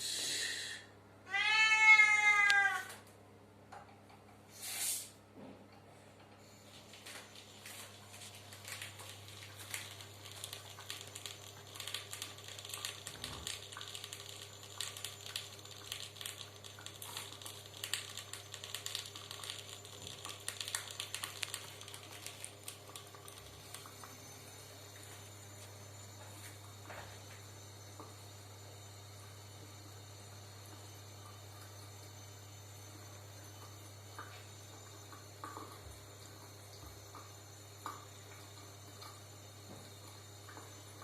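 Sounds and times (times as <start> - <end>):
soft clicking and crackling: 7.0 - 24.1.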